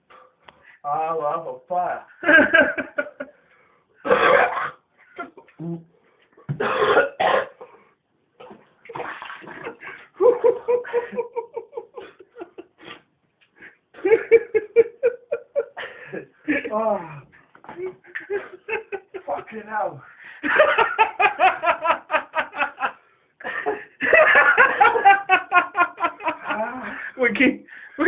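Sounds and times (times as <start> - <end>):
man coughing and spluttering: 4.0 - 5.5, 6.5 - 7.7, 8.4 - 9.8.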